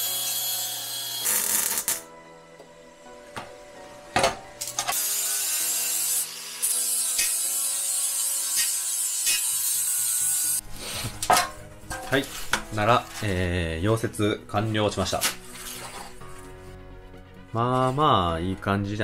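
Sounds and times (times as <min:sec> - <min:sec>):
hissing welding: 0:00.0 - 0:02.1, 0:04.7 - 0:10.6.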